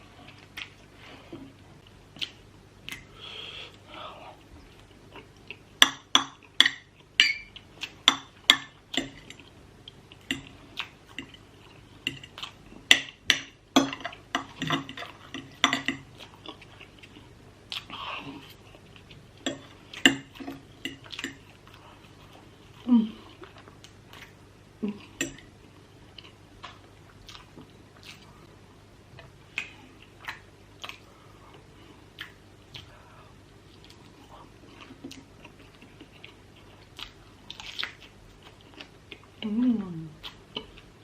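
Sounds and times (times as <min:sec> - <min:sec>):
person chewing: 0:03.7 - 0:28.5, 0:29.5 - 0:41.0
utensils clinking against dishes: 0:06.6 - 0:09.4.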